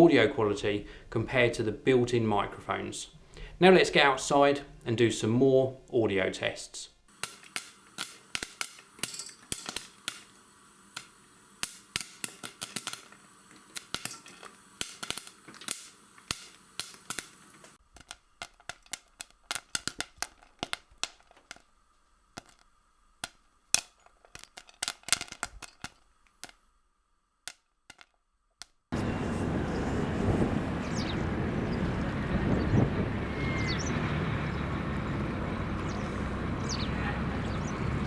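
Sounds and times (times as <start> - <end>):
sharp clicks and taps: 7.1 - 21.7, 27.5 - 28.8.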